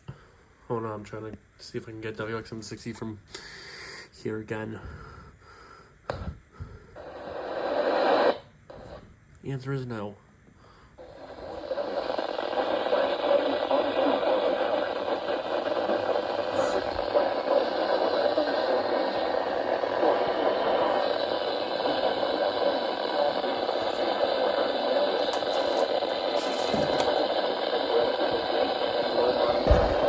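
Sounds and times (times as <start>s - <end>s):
radio static hiss: 6.1s - 30.0s.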